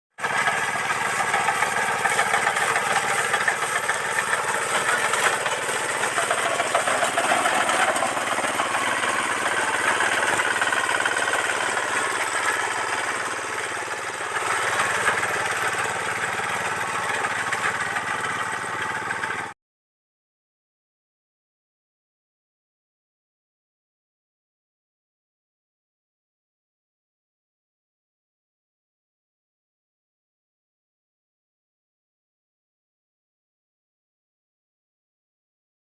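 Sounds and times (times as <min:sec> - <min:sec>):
harvester engine running: 0:00.2 - 0:19.5.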